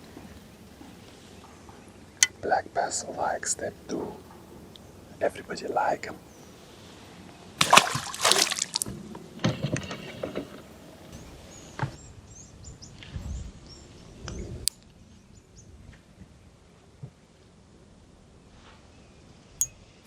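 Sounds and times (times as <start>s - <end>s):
water splashing and sloshing: 7.6s - 10.6s.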